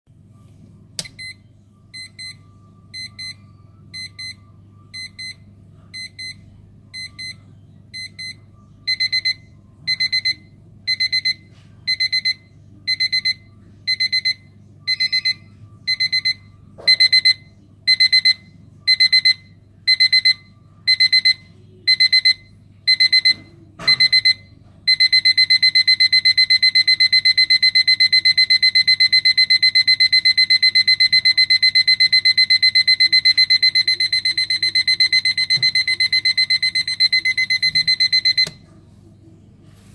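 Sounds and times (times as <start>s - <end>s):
alarm clock beeping: 8.0s - 38.6s.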